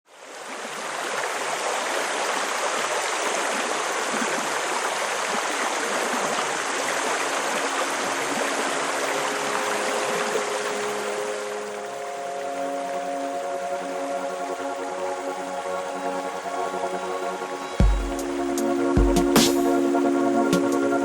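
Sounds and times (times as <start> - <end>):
fast-flowing stream rushing: 0.1 - 21.0
soft sustained music tones: 5.6 - 21.0.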